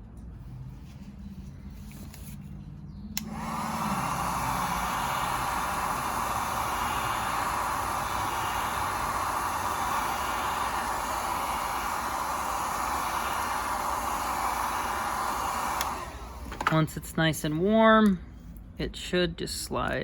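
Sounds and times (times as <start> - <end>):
heat gun switch click: 3.2 - 3.6, 15.7 - 16.8
heat gun blowing: 3.2 - 16.8.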